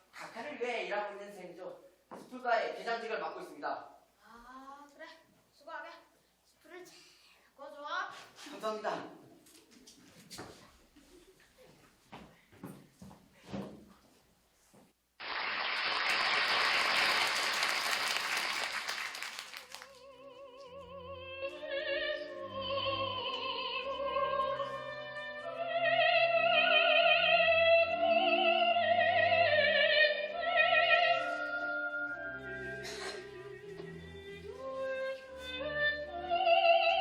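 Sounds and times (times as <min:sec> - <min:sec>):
operatic singing with vibrato: 0:16.9 - 0:37.0
orchestra: 0:19.7 - 0:37.0.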